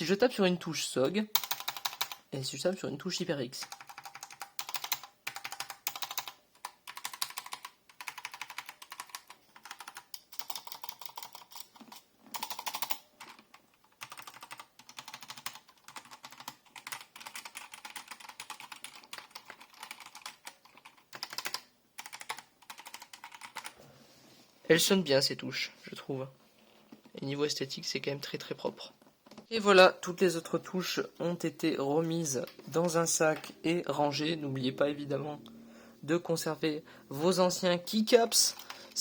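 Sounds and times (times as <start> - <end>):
mechanical keyboard keys clacking: 1.4 - 2.2, 3.6 - 23.8.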